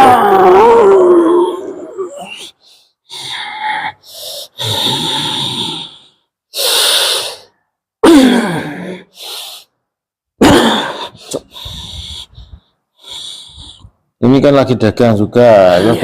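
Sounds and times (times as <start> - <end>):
person breathing hard: 2.2 - 9.9, 10.8 - 14.1
person groaning: 8.0 - 9.2, 10.4 - 12.1, 15.7 - 16.0.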